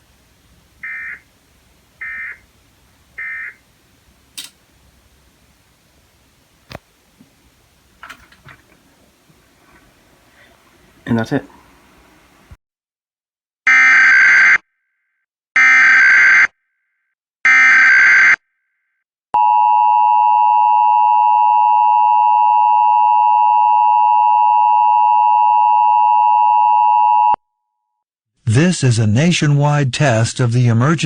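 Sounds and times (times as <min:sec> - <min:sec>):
two-tone alarm: 0:00.8 - 0:01.2, 0:02.0 - 0:02.4, 0:03.2 - 0:03.6.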